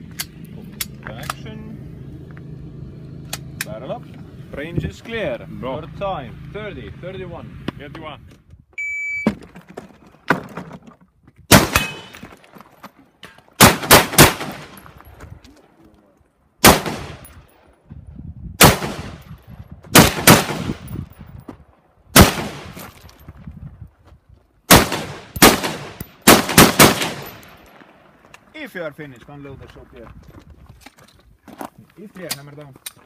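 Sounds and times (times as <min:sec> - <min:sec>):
rifle shots echoing: 0:11.5 - 0:12.1, 0:13.6 - 0:14.8, 0:16.6 - 0:17.4, 0:18.6 - 0:19.2, 0:19.9 - 0:20.9, 0:22.1 - 0:22.8, 0:24.7 - 0:28.2.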